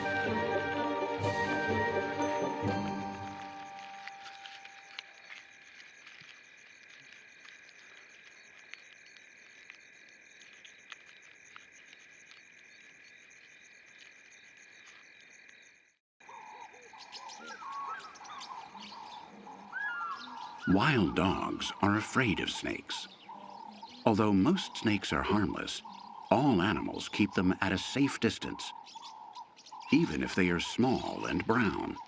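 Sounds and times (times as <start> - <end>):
high trilling animal chorus: 16.4 - 32.0.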